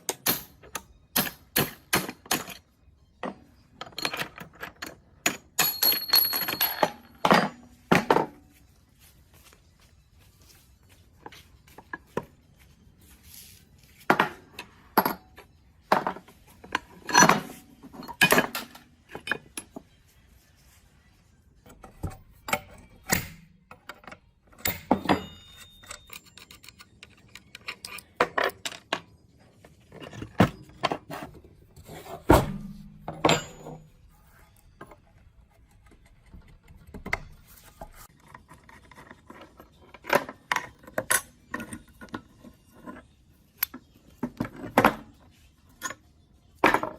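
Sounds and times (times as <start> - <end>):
metal tools clinking: 0.0 - 8.6, 13.3 - 20.0, 24.1 - 31.1, 31.9 - 34.3.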